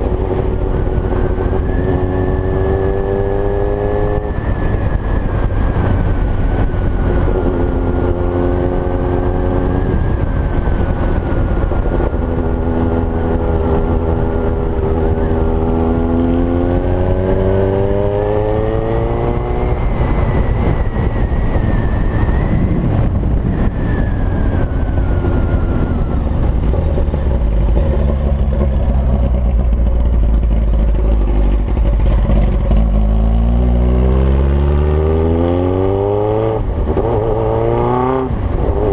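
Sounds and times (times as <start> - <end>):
motorcycle engine revving: 0.0 - 38.9.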